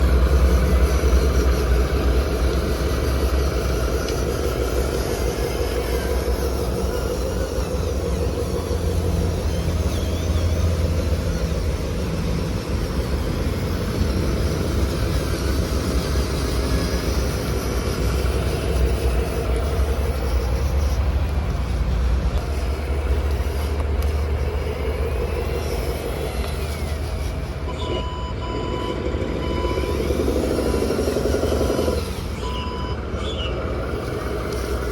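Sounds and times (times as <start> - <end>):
diesel engine rumble: 0.0 - 34.9.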